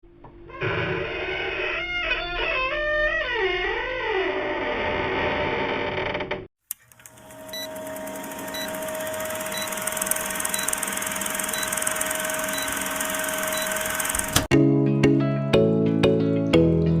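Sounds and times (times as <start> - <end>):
small electric motor humming: 6.9 - 14.5.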